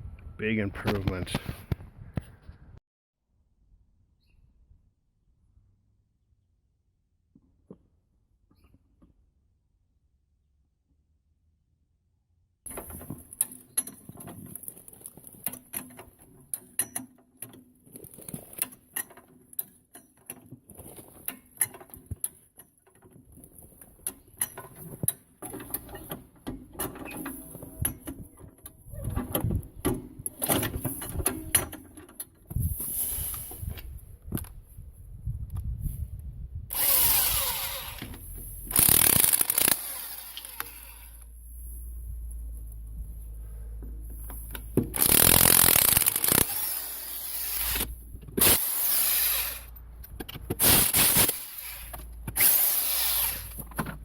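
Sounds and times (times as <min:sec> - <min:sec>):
power tool bursts: 0:36.7 - 0:41.2, 0:44.8 - 0:49.7, 0:50.5 - 0:53.8.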